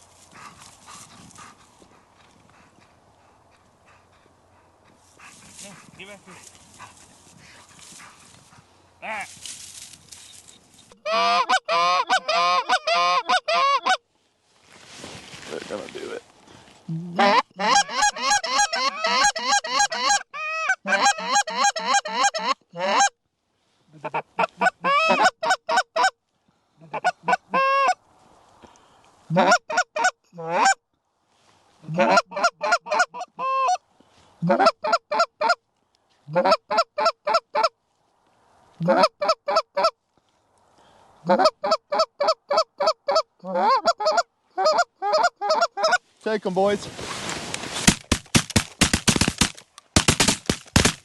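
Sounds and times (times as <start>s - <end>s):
goose call honks and clucks: 10.9s - 14.0s, 17.0s - 23.2s, 23.9s - 26.2s, 26.8s - 28.0s, 29.3s - 30.8s, 31.8s - 33.8s, 34.4s - 35.6s, 36.3s - 37.8s, 38.8s - 40.0s, 41.2s - 46.1s.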